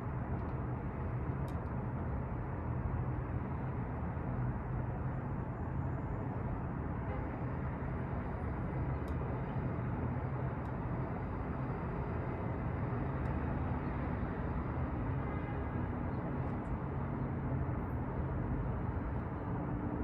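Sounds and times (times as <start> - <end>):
city traffic rumble: 0.0 - 20.0.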